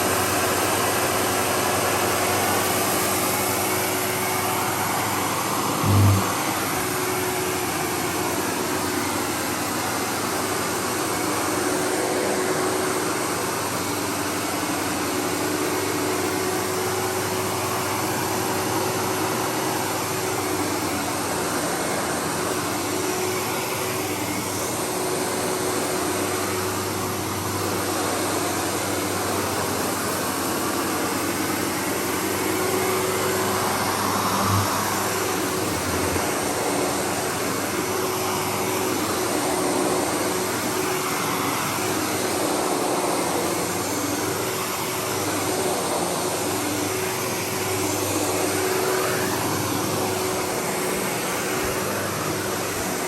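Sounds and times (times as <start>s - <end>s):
vacuum cleaner running: 0.0s - 53.0s.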